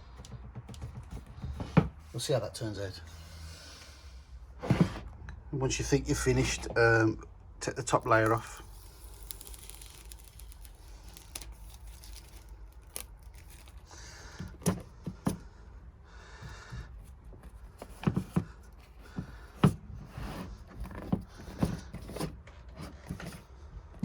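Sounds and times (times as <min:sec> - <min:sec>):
sharp taps and knocks: 0:00.0 - 0:02.0
plastic film peeling and crinkling: 0:07.8 - 0:14.6.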